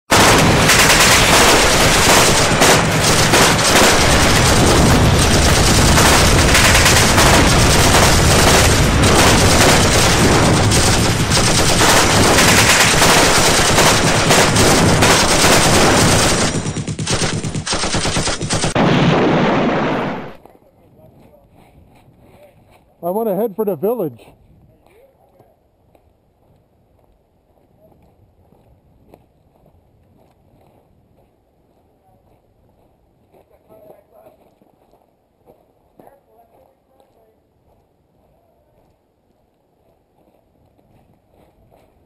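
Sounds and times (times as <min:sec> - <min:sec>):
rapid machine-gun fire: 0:00.1 - 0:20.4.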